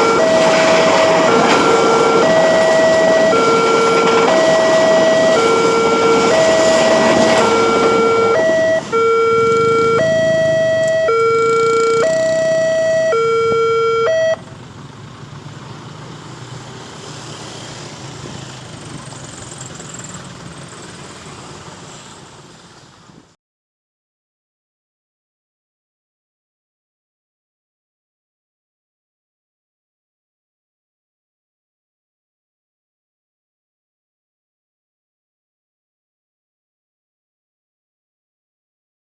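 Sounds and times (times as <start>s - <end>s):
level-crossing alarm two-tone warning: 0.0s - 14.4s.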